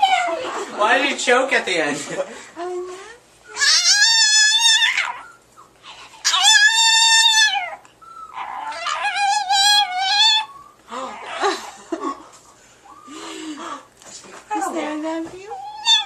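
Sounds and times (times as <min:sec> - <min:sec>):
dog howling: 0:03.5 - 0:05.4, 0:06.2 - 0:11.7.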